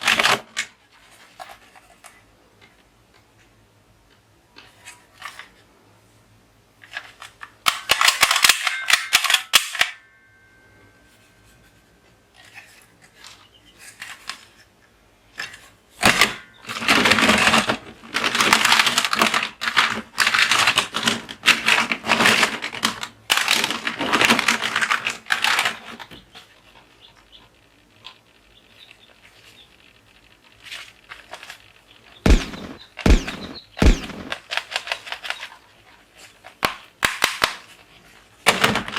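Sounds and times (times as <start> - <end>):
toy guns firing in bursts: 32.2 - 35.4, 36.6 - 37.6.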